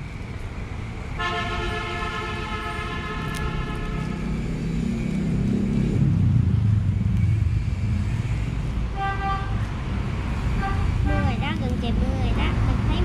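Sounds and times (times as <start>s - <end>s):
motor vehicle rumble: 0.0s - 13.0s
vehicle horn blast: 1.2s - 4.2s, 9.0s - 9.6s, 10.6s - 11.3s.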